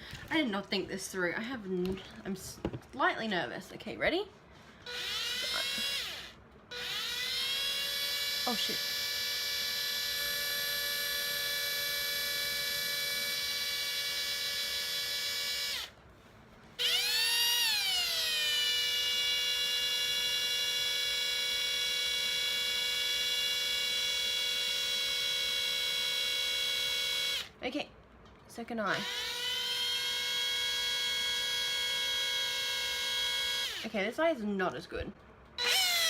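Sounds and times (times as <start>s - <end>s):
cordless drill motor whine: 4.8s - 15.9s, 16.8s - 27.5s, 28.9s - 33.9s, 35.6s - 36.0s.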